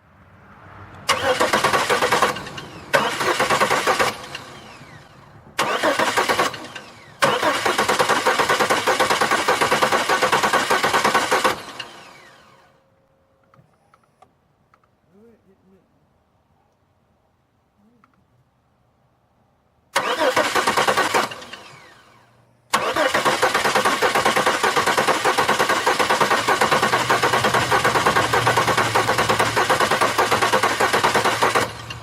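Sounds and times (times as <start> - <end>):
car engine cranking on starter: 1.1 - 12.8, 19.9 - 32.0.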